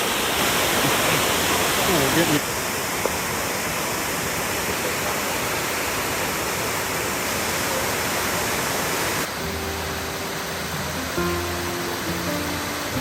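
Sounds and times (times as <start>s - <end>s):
waterfall rushing: 0.0s - 13.0s
music with held notes: 9.3s - 13.0s.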